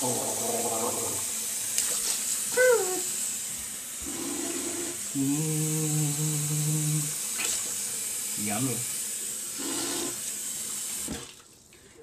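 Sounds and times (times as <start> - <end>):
tap running water: 0.0 - 12.0
person humming: 2.5 - 3.1, 4.1 - 7.2.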